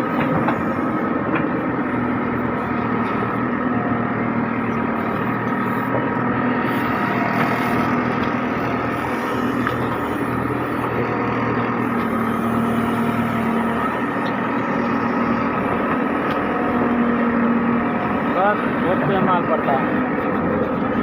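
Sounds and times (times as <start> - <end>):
backhoe diesel engine running: 0.0 - 21.0.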